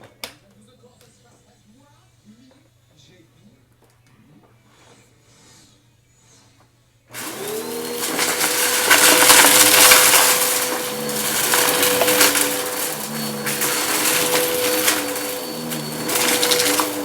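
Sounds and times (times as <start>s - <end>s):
vacuum cleaner motor whine: 7.1s - 17.0s
vacuum crackling picking up debris: 7.2s - 17.0s.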